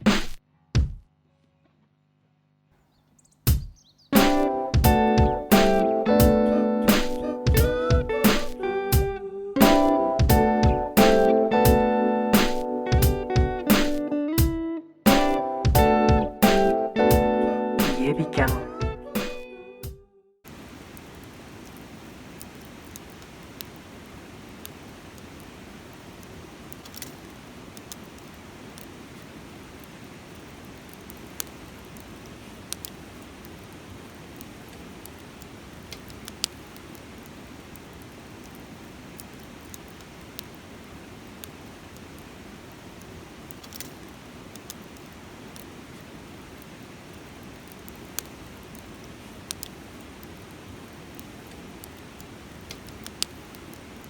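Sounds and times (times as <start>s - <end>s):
campfire crackling and popping: 3.5s - 14.5s, 15.1s - 19.5s, 20.5s - 54.0s
river rushing: 20.5s - 54.0s.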